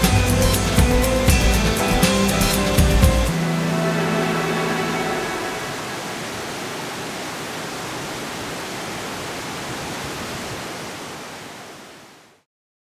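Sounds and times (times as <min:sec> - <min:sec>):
whitewater rapids rushing: 0:03.3 - 0:12.1.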